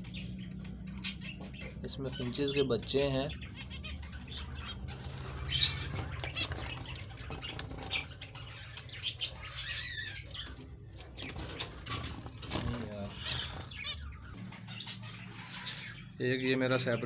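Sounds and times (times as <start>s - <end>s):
finches chirping: 0.0s - 17.0s
wings fluttering: 4.6s - 14.4s.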